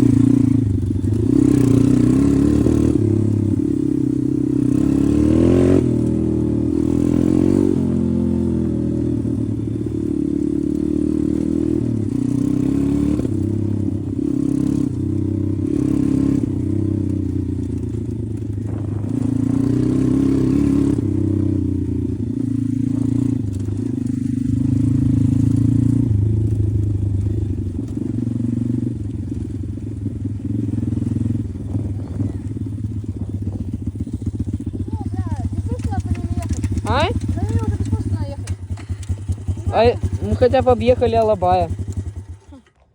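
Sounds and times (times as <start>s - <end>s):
pit bike engine revving: 0.0s - 42.8s.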